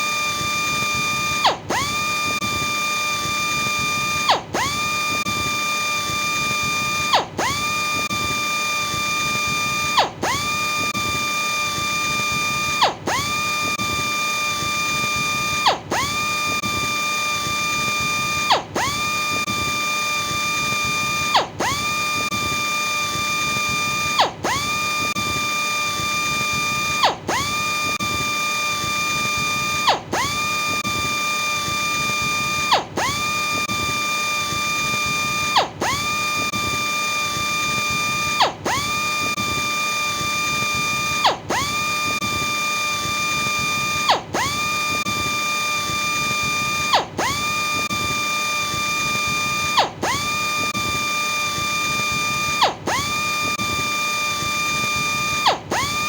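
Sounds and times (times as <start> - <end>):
electric sander whining: 0.0 - 56.0.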